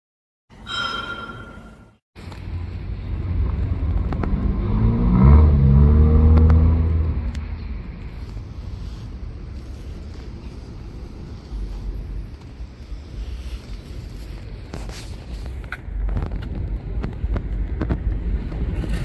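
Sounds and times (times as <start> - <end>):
short high tone: 0.6 - 2.0.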